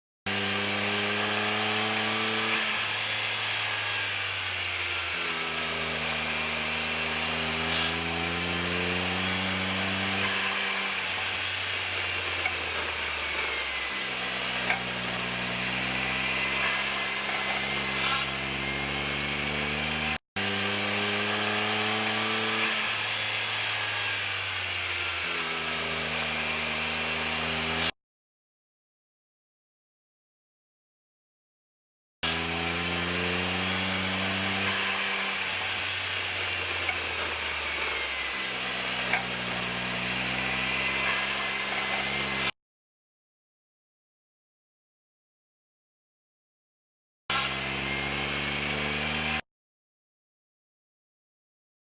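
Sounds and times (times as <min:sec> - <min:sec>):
car engine revving: 0:00.3 - 0:24.5, 0:32.2 - 0:42.5
abnormal drivetrain noise: 0:33.1 - 0:42.5.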